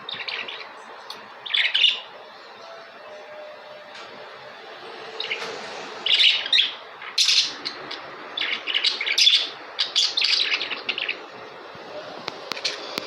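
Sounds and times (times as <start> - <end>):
budgerigars chirping: 0.0 - 2.2, 5.2 - 11.5.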